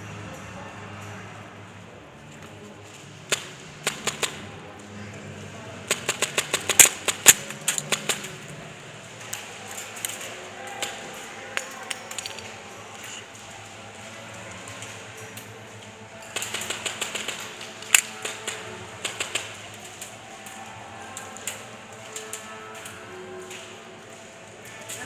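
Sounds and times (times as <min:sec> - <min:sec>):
airsoft guns firing: 0:03.3 - 0:04.6, 0:05.9 - 0:08.5, 0:16.2 - 0:20.2.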